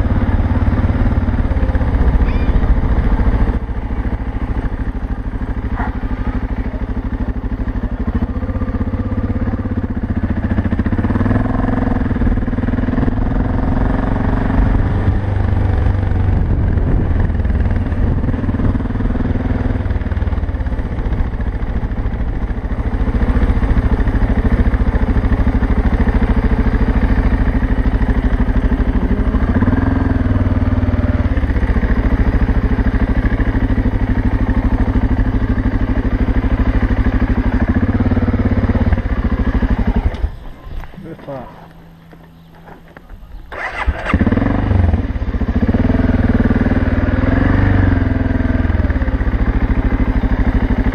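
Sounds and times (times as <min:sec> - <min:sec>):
motorcycle engine running: 0:00.0 - 0:50.9.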